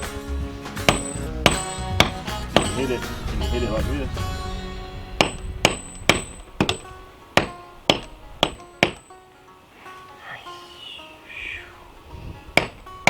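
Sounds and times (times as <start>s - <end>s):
hammer striking metal bolt: 0.8s - 2.9s, 5.2s - 9.1s.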